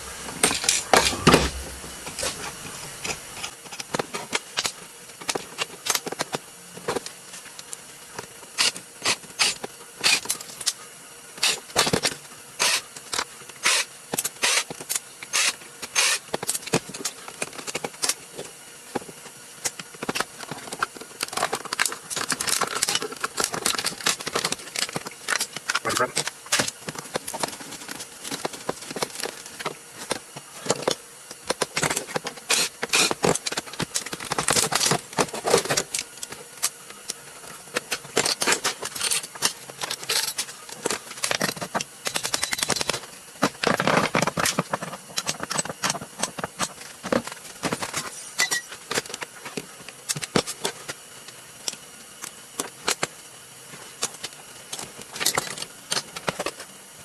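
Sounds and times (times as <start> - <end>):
parts clicking and rattling: 11.4 - 56.8.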